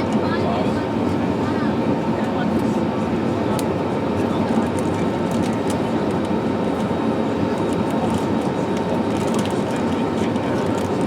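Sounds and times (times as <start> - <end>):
aircraft cabin engine rumble: 0.0 - 11.0.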